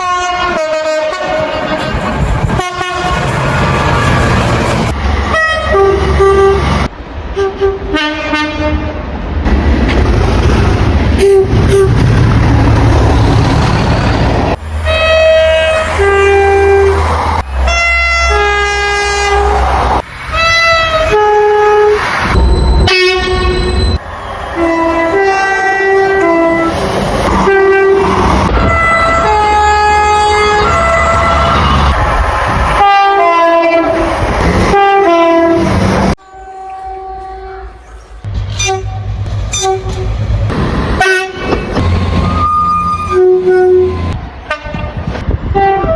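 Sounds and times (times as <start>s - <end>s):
train horn blasts: 0.0s - 3.3s, 5.3s - 6.7s, 7.3s - 9.0s, 14.8s - 17.0s, 17.6s - 19.6s, 20.3s - 22.0s, 22.8s - 23.7s, 24.6s - 26.8s, 27.4s - 28.0s, 28.6s - 32.0s, 32.8s - 34.0s, 34.7s - 37.9s, 38.5s - 40.2s, 41.0s - 45.9s
rumble of train wheels on rail: 0.0s - 45.9s.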